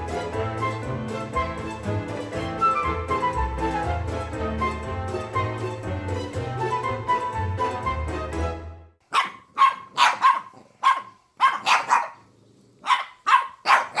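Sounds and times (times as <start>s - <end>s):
string music: 0.0s - 9.0s
dog barking: 9.1s - 14.0s.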